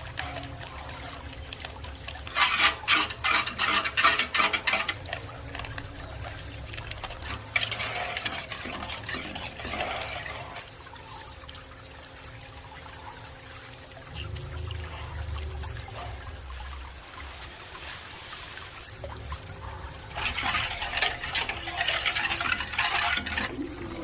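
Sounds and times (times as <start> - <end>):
liquid pouring: 0.0 - 24.0
utensil clattering against pot: 2.3 - 6.0, 7.0 - 10.7, 20.1 - 23.6.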